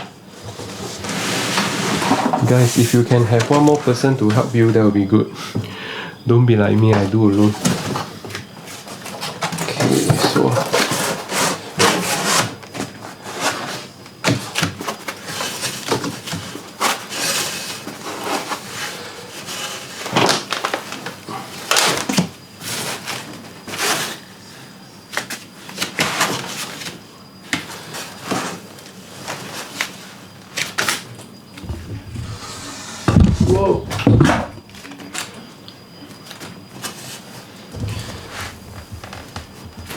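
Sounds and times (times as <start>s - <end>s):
cardboard and foam scraping: 31.6s - 34.8s, 37.7s - 39.9s
heavy case knocks and clunks: 31.6s - 34.8s, 37.7s - 39.9s.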